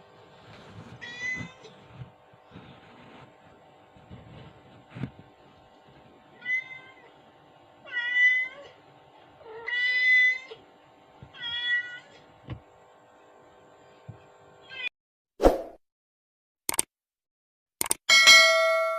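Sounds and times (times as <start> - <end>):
cat meowing: 6.4 - 7.1, 7.8 - 8.8, 9.4 - 10.6, 11.3 - 12.2, 14.6 - 14.9.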